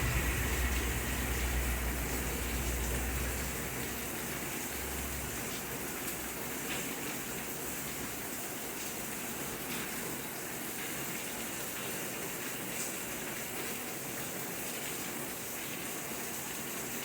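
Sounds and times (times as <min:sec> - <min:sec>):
low rumble: 0:00.0 - 0:03.8
steady rain falling: 0:00.0 - 0:17.0.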